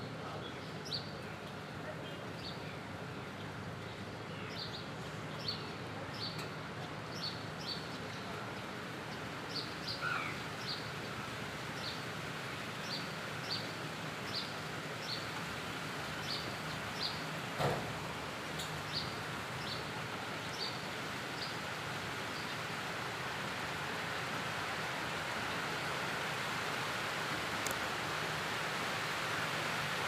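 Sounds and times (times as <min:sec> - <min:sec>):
rain hissing: 0:08.7 - 0:30.0.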